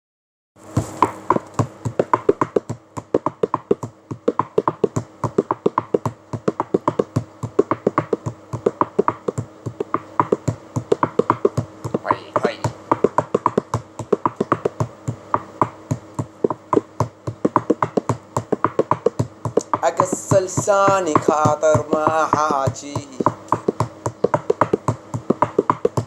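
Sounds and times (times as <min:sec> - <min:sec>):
sharp percussion taps: 0:01.0 - 0:26.0.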